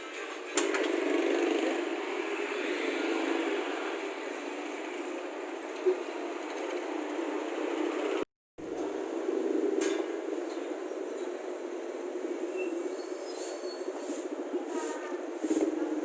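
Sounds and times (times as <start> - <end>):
traffic street noise: 0.0 - 16.0.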